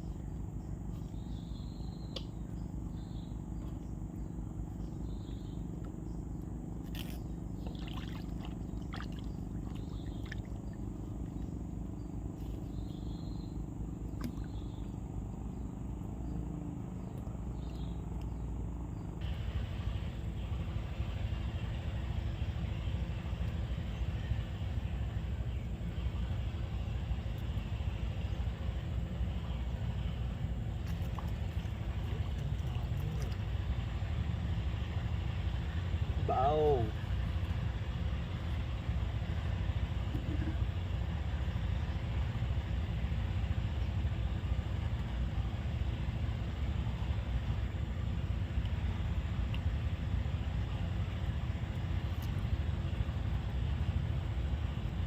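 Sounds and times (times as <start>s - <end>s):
low motor hum: 0.0s - 55.0s.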